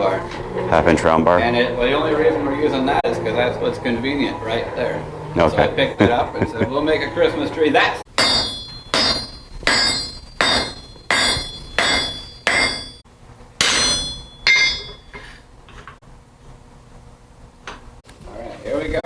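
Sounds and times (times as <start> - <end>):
hammer striking steel on anvil: 8.1 - 13.0, 13.6 - 15.4.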